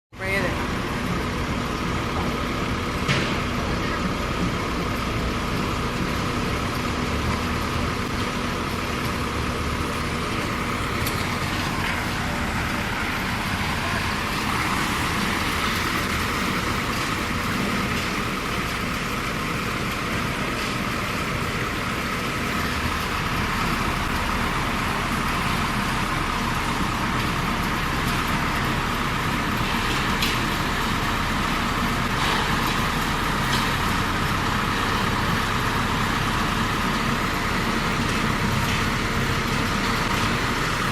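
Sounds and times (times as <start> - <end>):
concrete mixer engine running: 0.2 - 40.9.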